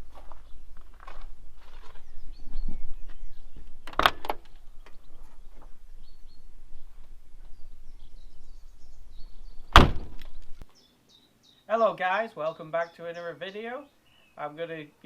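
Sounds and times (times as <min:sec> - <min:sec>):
outdoor background noise: 0:00.0 - 0:15.0
loud sudden thumps: 0:09.7 - 0:10.4
faint bird chirps: 0:10.6 - 0:11.8, 0:12.4 - 0:14.5.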